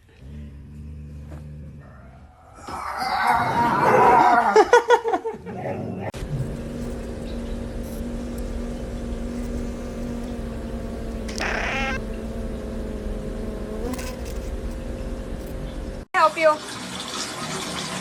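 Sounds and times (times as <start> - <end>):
steady low hum: 6.2 - 16.1
short animal cry: 11.3 - 12.0.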